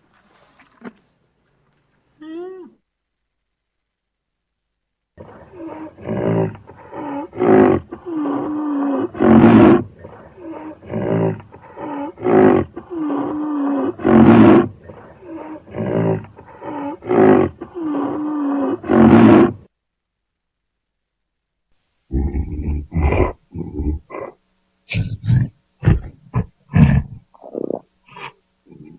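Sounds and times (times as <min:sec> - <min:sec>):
rhinoceros harsh bellow: 0:05.2 - 0:19.6
rhinoceros moaning calls: 0:05.2 - 0:19.6.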